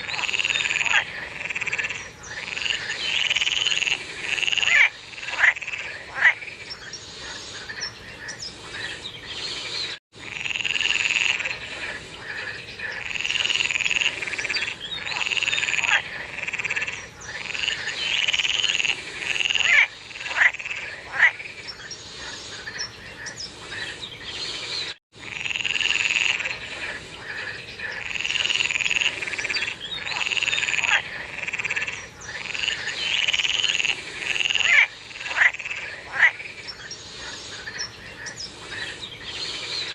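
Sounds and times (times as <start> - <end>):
frogs croaking: 0.0 - 24.5, 25.1 - 39.9.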